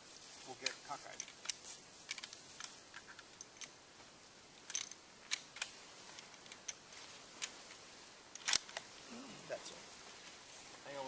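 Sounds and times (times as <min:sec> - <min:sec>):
rifle bolt metallic clicks: 0:04.6 - 0:06.8, 0:08.3 - 0:08.9.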